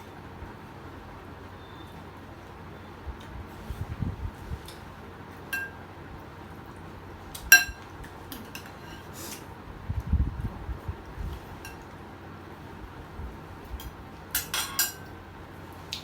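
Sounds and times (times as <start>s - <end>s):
cutlery clinking on dishes: 5.6s - 5.8s, 7.4s - 9.5s, 14.3s - 15.2s.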